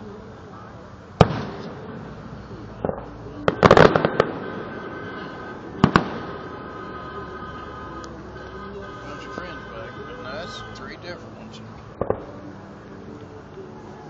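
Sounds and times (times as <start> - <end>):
crackling firework pops: 1.2 - 2.0, 2.8 - 6.8, 11.8 - 12.4
fireworks bursting: 1.2 - 12.6.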